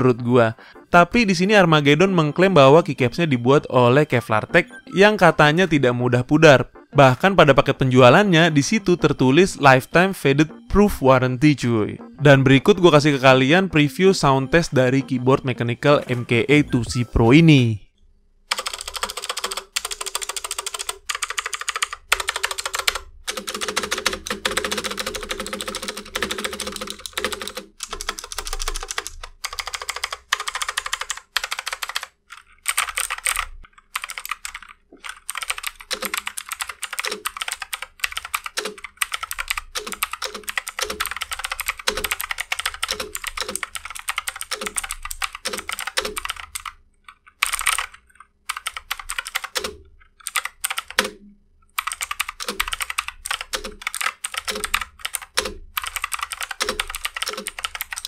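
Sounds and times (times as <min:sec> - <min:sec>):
clicky keyboard typing: 0:18.5 - 0:58.0.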